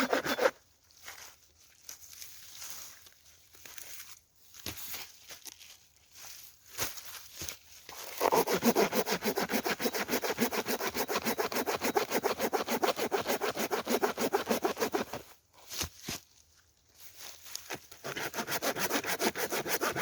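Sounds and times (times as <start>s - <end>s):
saw cutting through wood: 0.0s - 0.6s, 8.0s - 15.3s, 18.0s - 20.0s.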